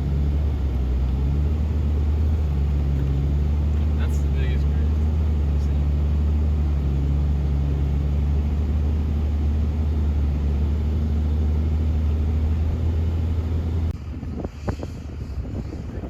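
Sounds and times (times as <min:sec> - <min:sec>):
diesel truck driving drone: 0:00.0 - 0:16.0
wind noise: 0:13.9 - 0:16.0.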